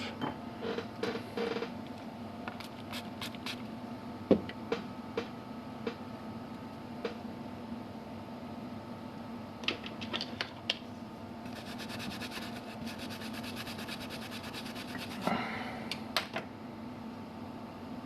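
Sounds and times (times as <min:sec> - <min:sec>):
steady background hum: 0:00.0 - 0:18.0
brush scrubbing circuit board: 0:11.5 - 0:15.2
scrape: 0:11.5 - 0:15.3.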